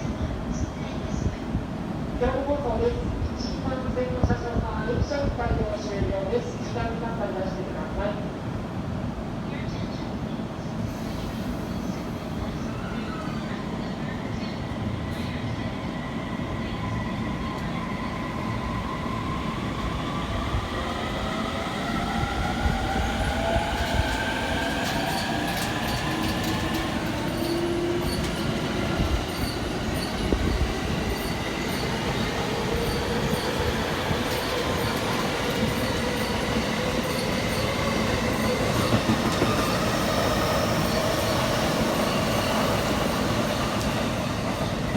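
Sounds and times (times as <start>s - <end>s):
train rail rumble: 10.6s - 44.9s.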